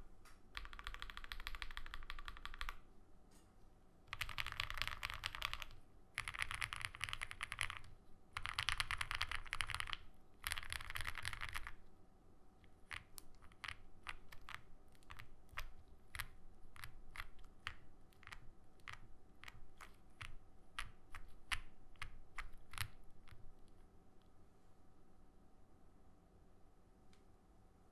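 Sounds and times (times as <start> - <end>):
keyboard typing: 0.3 - 2.9, 4.1 - 11.9, 12.6 - 23.8.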